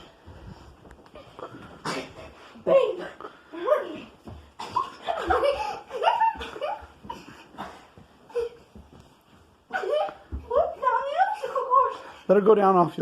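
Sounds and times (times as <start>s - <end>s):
people laughing: 4.7s - 7.6s.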